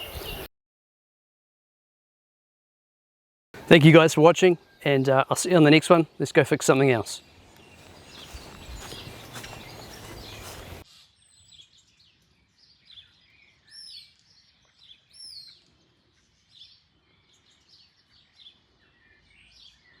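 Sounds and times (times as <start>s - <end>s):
songbirds chirping: 0.0s - 0.5s, 3.6s - 20.0s
loud outdoor noise: 7.5s - 10.8s.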